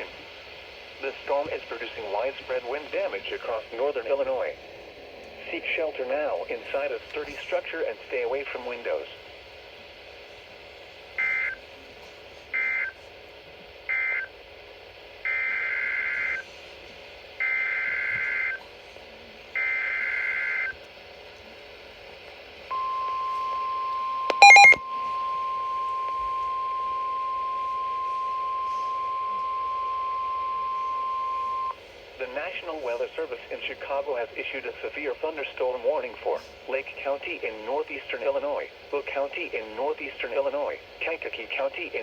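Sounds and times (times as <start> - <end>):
loud beep: 24.3 - 24.8
steady warning alarm tone: 24.3 - 24.8
warbling data tones: 24.3 - 24.8.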